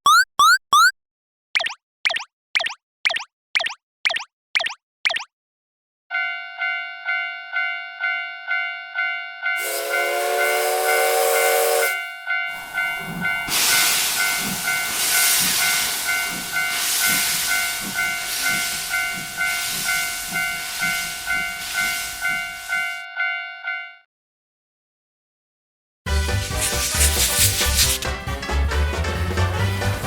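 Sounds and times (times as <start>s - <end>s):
crossing warning bell dinging: 6.1s - 24.0s
locomotive steam hissing and chuffing: 9.6s - 11.8s, 13.0s - 22.8s, 26.1s - 28.5s
steam locomotive whistle: 9.6s - 12.1s.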